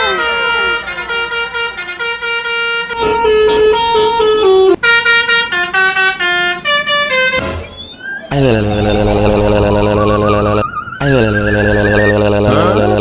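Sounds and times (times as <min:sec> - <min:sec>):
multi-tone bus horn tune: 0:00.0 - 0:13.0
rising whistle: 0:07.6 - 0:12.2.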